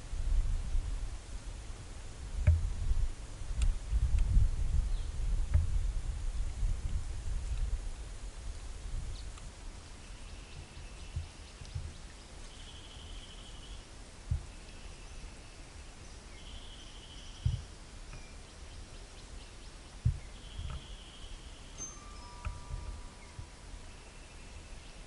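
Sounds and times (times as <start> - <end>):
dull low bumps: 0.0 - 9.8, 10.5 - 12.1, 14.1 - 14.7, 17.3 - 18.8, 19.9 - 21.0, 22.4 - 23.7
steady background hiss: 0.0 - 25.0.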